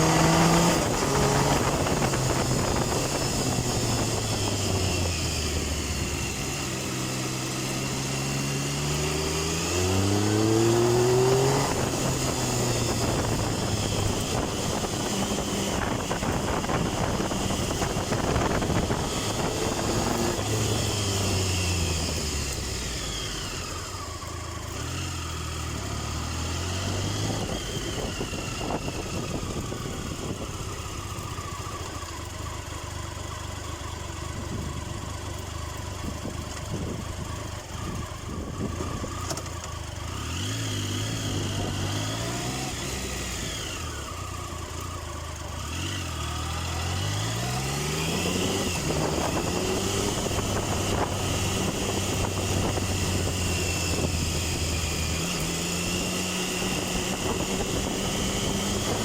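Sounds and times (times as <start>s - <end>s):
motorcycle engine revving: 0.0s - 59.0s
wind on microphone: 10.1s - 22.2s, 47.0s - 59.0s.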